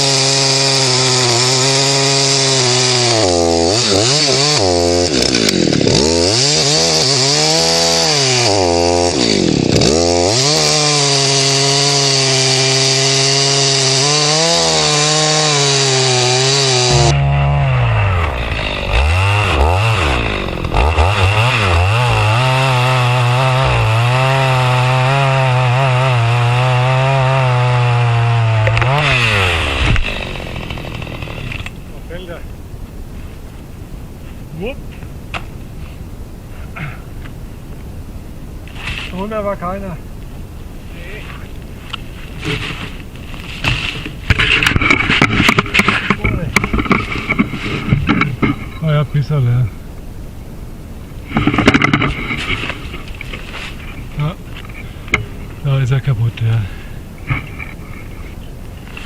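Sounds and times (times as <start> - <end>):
chainsaw cutting wood: 0.0 - 31.9, 41.9 - 48.8, 51.2 - 55.6, 57.2 - 59.0.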